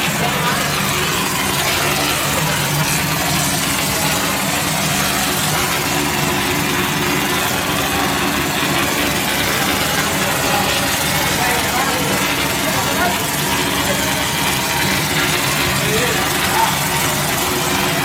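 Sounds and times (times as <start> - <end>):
plastering machine motor humming: 0.0 - 18.0.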